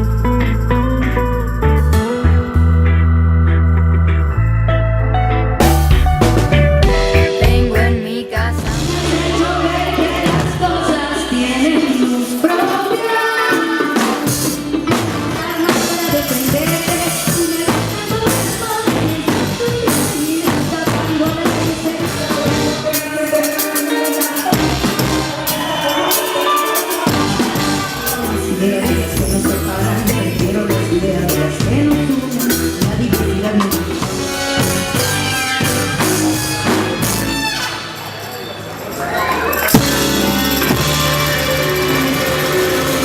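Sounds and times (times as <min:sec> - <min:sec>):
drums and percussion: 0:00.0 - 0:02.2, 0:05.6 - 0:43.0
live band playing: 0:00.0 - 0:43.0
person singing: 0:06.9 - 0:34.7.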